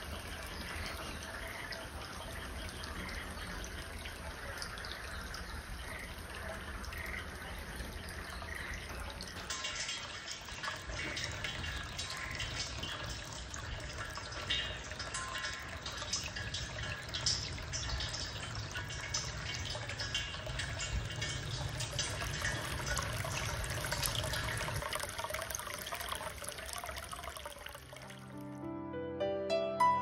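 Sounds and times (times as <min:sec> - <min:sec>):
water dripping: 0:00.0 - 0:28.6
water trickling: 0:00.0 - 0:28.6
frogs calling: 0:00.2 - 0:09.5, 0:11.0 - 0:13.3.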